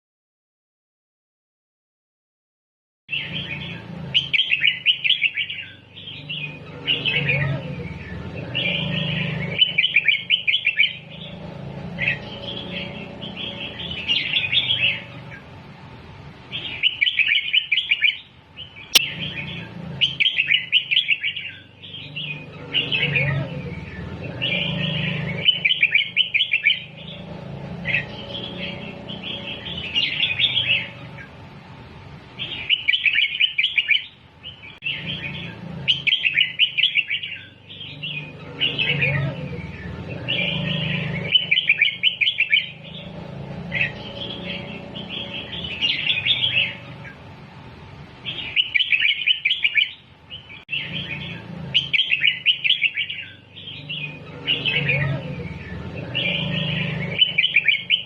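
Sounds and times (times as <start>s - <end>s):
bird singing whistled phrases: 4.2s - 11.1s, 16.7s - 18.3s, 18.9s - 23.6s, 24.4s - 27.0s, 32.4s - 34.2s, 34.8s - 42.8s, 48.3s - 50.0s, 50.7s - 58.0s.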